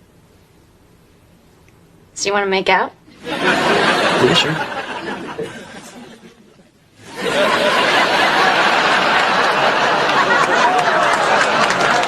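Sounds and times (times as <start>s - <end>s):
audience laughing loudly: 3.1s - 12.0s.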